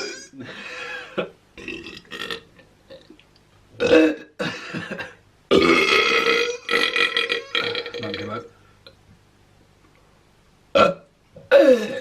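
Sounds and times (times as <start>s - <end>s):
loud burps: 0.0s - 0.4s, 1.6s - 3.2s, 3.8s - 8.5s, 10.7s - 12.0s.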